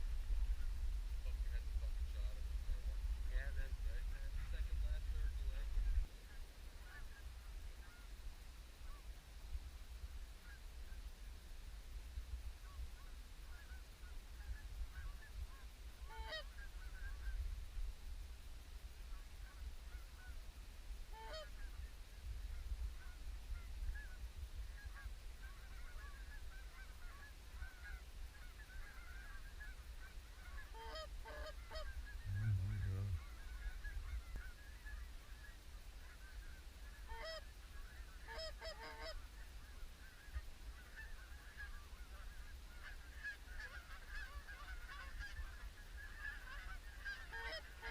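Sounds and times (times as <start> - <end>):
low wind rumble: 0.0 - 20.0, 27.7 - 37.0
geese honking: 16.1 - 17.3, 21.2 - 21.7, 24.8 - 47.9.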